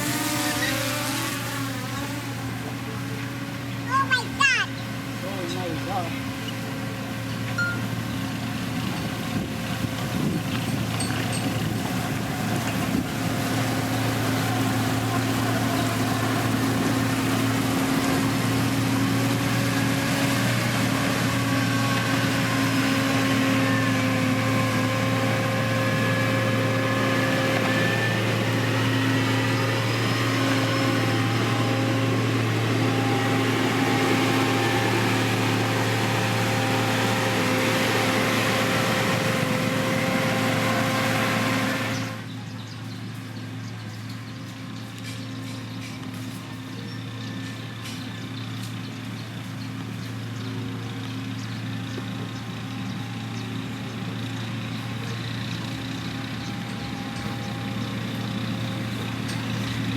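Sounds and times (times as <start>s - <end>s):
heavy machine diesel engine: 0.0s - 59.9s.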